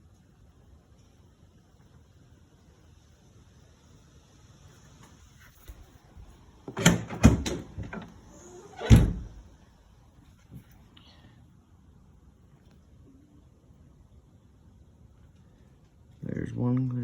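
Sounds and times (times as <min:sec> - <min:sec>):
tailgate heavy clunks: 0:06.7 - 0:09.5.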